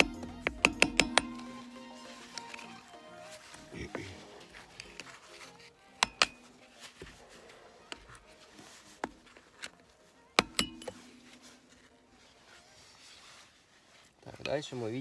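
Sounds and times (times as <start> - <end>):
metal tool knocking on hub: 0.0 - 1.7, 6.0 - 6.4, 10.4 - 11.1.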